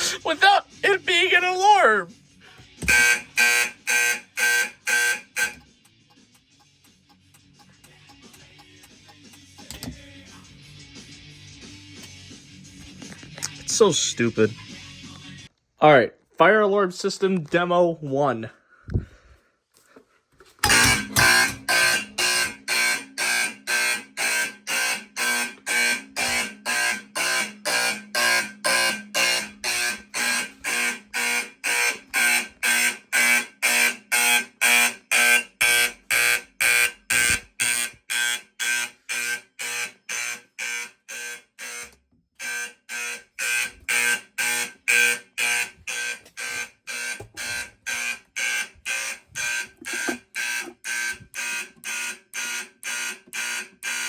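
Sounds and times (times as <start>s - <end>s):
pulsing fire alarm horn: 2.8s - 5.7s, 20.6s - 54.0s.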